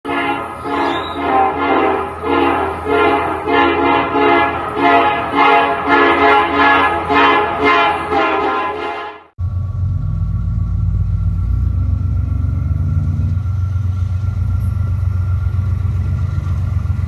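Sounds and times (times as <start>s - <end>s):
train wheels whining on rail: 0.1s - 8.5s, 9.4s - 17.0s
low hum: 9.4s - 17.0s.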